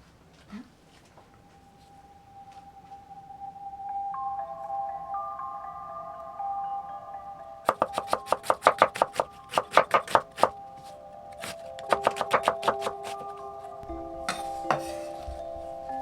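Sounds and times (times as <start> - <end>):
mallet percussion background music: 1.9 - 16.0
knife chopping on cutting board: 7.7 - 10.6, 11.4 - 13.3.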